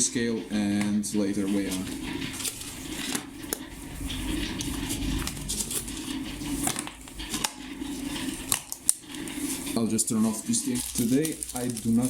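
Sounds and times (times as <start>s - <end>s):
machine humming: 0.0s - 12.0s
small hard pellets clicking: 10.3s - 12.0s.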